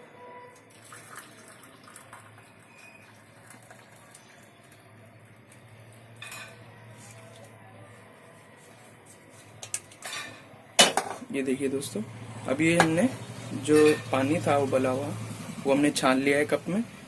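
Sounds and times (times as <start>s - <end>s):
water pouring into cup: 0.6s - 6.0s.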